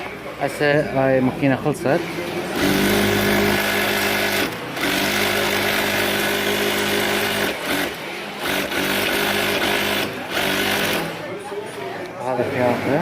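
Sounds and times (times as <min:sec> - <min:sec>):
industrial sewing machine stitching: 0:01.9 - 0:11.4, 0:12.4 - 0:13.0.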